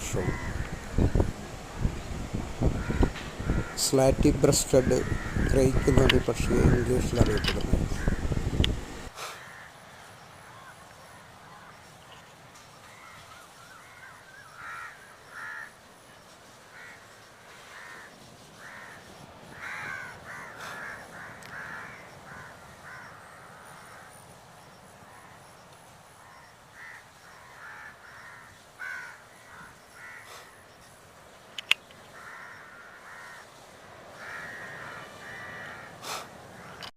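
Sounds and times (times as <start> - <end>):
bird calling: 0.0 - 8.6.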